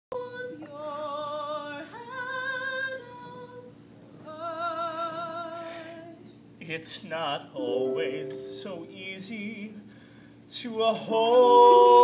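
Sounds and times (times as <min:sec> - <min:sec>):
person singing wordless held notes: 0:07.6 - 0:09.7.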